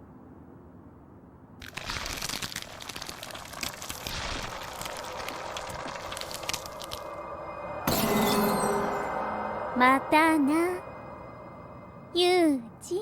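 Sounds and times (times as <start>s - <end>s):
dense crackling crunching: 1.6s - 7.3s.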